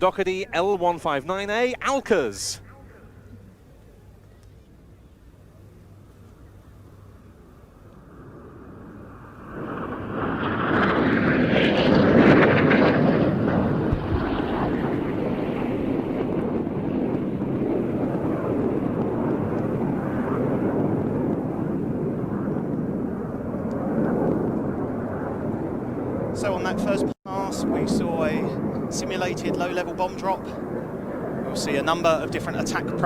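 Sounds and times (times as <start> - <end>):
jet engines roaring: 6.8 - 33.0.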